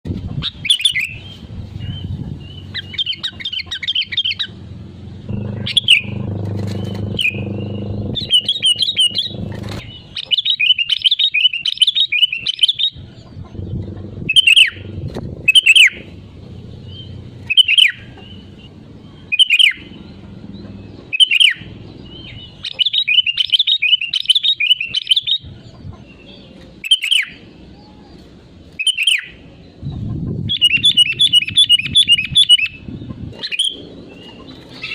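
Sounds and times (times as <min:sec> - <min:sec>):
bird sharp downward-slurred calls: 0:00.4 - 0:25.6, 0:26.2 - 0:28.2, 0:28.8 - 0:29.6, 0:30.5 - 0:34.9
low rumble: 0:04.4 - 0:10.0, 0:13.0 - 0:22.6
bird bubbly chirping: 0:05.3 - 0:09.6, 0:11.7 - 0:20.2.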